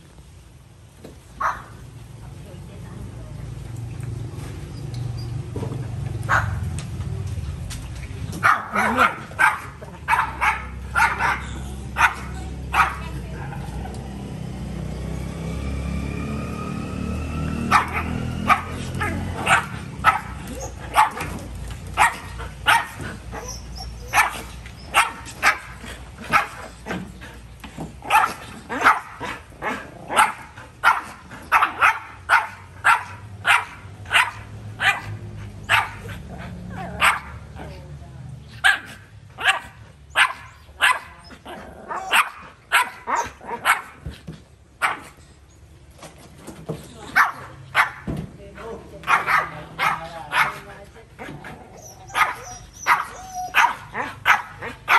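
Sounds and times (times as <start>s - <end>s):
dog barking: 1.4s - 1.7s, 6.3s - 6.6s, 8.4s - 13.7s, 17.7s - 21.3s, 22.0s - 25.7s, 26.3s - 26.6s, 28.0s - 36.1s, 36.8s - 37.4s, 38.6s - 41.2s, 41.9s - 44.0s, 44.8s - 45.1s, 47.1s - 48.1s, 49.0s - 50.6s, 52.0s - 54.9s.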